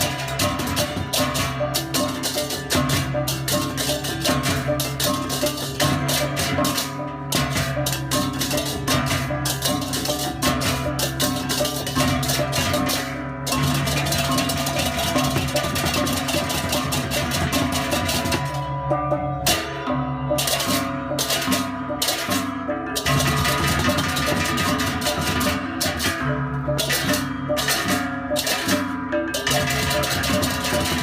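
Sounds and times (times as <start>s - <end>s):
music with fast dense percussion: 0.0s - 31.0s.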